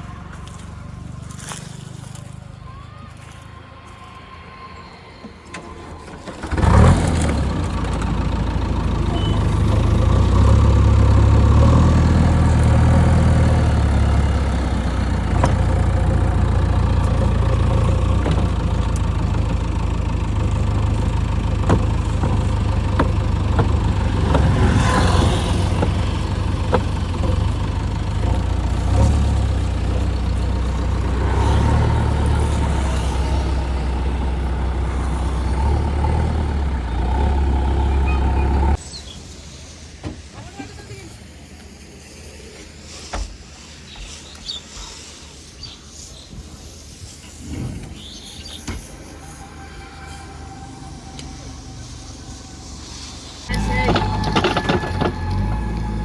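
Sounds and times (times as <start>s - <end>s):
diesel engine running: 0.0s - 3.5s, 5.5s - 38.8s, 48.7s - 56.0s.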